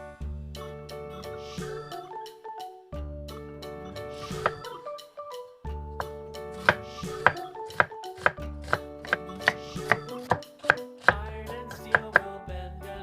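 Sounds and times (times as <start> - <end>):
light background music: 0.0 - 13.0
knife chopping on cutting board: 4.4 - 4.6, 6.6 - 12.3.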